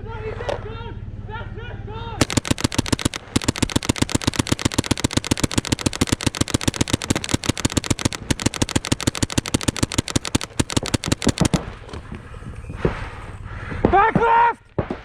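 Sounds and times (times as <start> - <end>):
paintball markers firing rapidly: 2.2 - 12.0.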